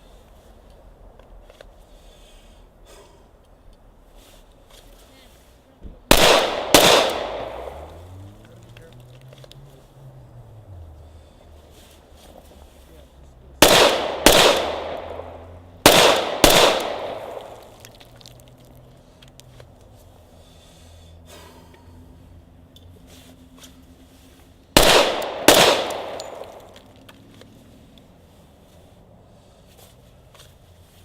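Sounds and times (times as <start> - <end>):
pistol shots echoing: 6.1 - 8.0, 13.6 - 17.8, 24.8 - 26.8.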